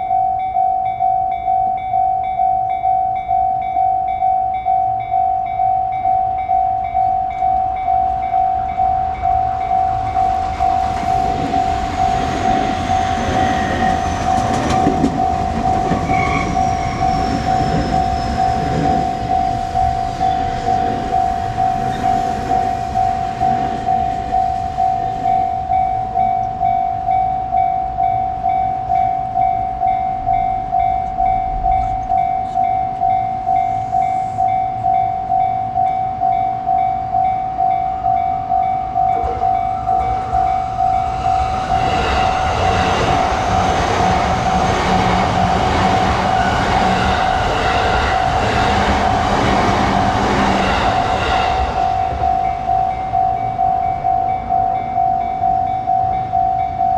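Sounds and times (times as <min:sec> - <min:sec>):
electric train passing: 0:00.0 - 0:56.9
level-crossing warning bell: 0:00.0 - 0:56.9.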